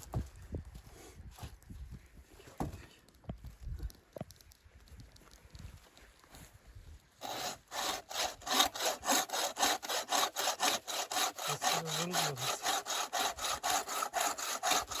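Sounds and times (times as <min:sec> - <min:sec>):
hand saw cutting wood: 0:07.2 - 0:15.0.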